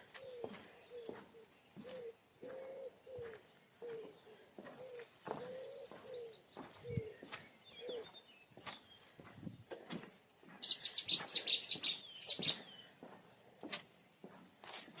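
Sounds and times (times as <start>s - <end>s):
faint small bird chirps: 9.9s - 12.9s.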